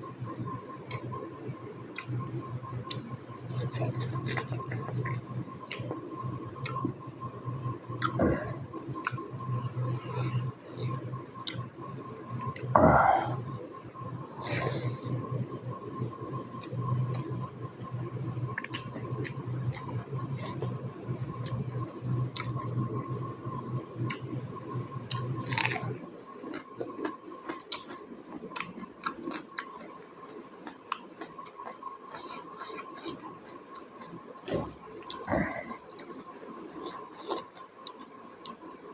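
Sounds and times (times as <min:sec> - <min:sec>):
low hum: 0:00.0 - 0:21.3
wet chewing and smacking: 0:00.3 - 0:01.2, 0:01.8 - 0:11.8, 0:16.3 - 0:23.2, 0:24.0 - 0:38.9
noisy burst: 0:12.7 - 0:13.5.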